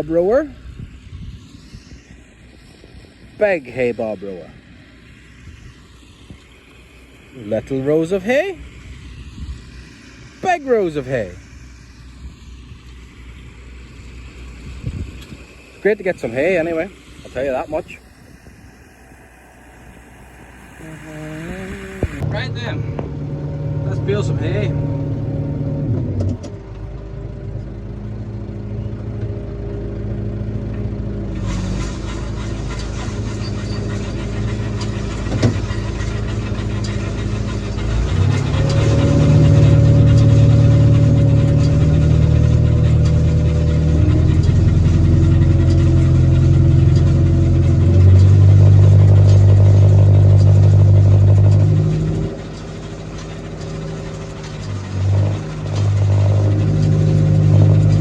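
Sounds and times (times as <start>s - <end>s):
tractor engine running: 0.0s - 58.0s
mechanical clatter and hiss: 31.3s - 58.0s.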